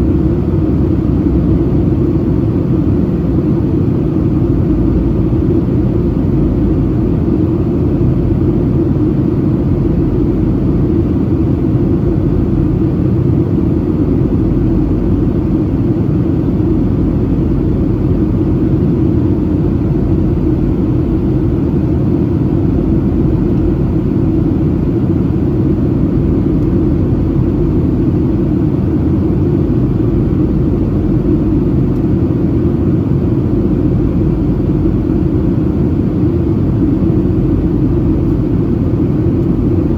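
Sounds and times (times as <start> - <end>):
jet engine drone in cabin: 0.0 - 39.9.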